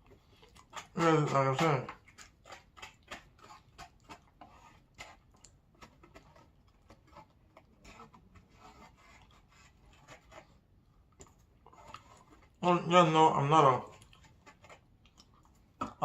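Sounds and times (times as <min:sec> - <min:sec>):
small clicks and rustling from eating: 0:00.0 - 0:01.0, 0:13.9 - 0:16.0.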